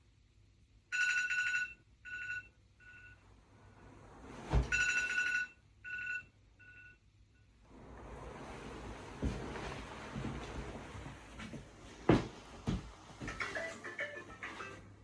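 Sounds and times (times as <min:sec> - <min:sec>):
two-tone phone ring: 0:00.9 - 0:03.2, 0:04.7 - 0:07.0.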